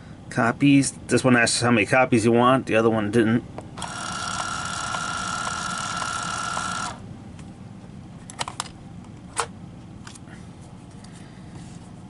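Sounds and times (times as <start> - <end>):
label maker motor whirring: 3.8 - 7.0.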